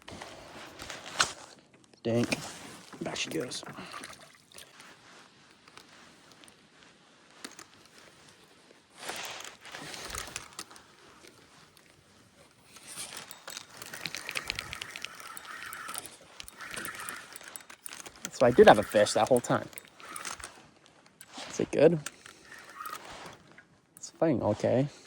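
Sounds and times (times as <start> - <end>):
clothing rustling: 0.0 - 25.0
rapid small clicks: 12.6 - 23.7.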